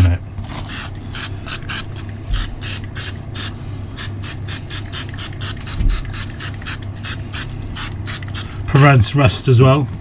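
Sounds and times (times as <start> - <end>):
steady low hum: 0.0 - 10.0
aerosol spray hissing: 0.7 - 8.5.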